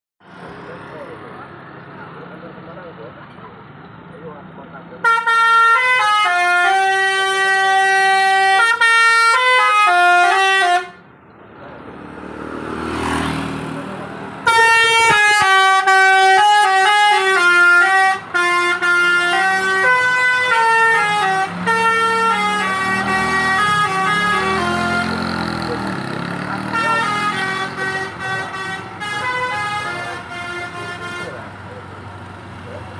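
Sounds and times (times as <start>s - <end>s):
multi-tone bus horn melody: 5.0s - 11.1s, 14.4s - 31.6s.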